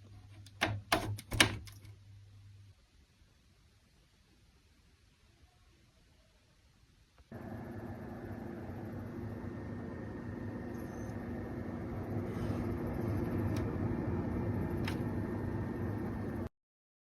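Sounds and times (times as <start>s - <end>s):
computer fans humming: 7.3s - 16.5s.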